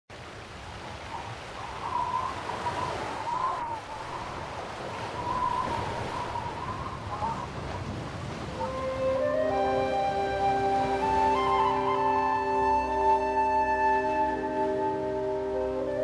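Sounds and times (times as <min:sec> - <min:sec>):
sea surf washing: 0:00.1 - 0:16.0
wind: 0:00.1 - 0:16.0
thin wavering high tone: 0:08.6 - 0:16.0.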